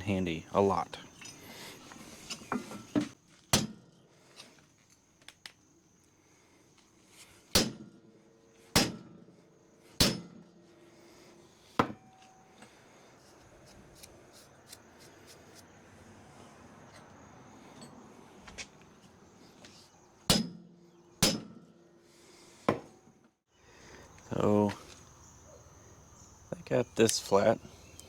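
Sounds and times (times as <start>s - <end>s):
sledgehammer striking steel plate: 3.5s - 3.8s, 7.5s - 7.9s, 8.7s - 9.2s, 10.0s - 10.5s, 20.3s - 21.6s.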